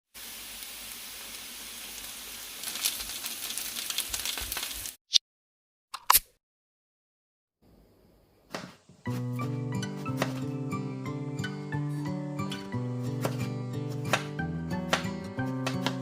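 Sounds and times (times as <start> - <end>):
batter sizzling in oil: 0.1 - 5.0.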